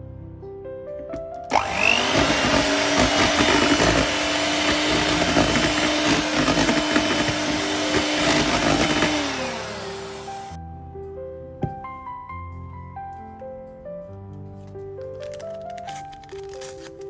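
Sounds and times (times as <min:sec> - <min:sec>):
electric hand mixer running: 0:01.5 - 0:10.6.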